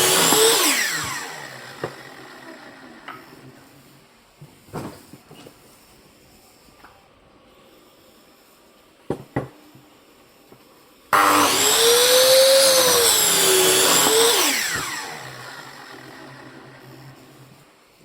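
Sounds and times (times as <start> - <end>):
electric power saw whining: 0.0 - 3.4, 11.2 - 17.5.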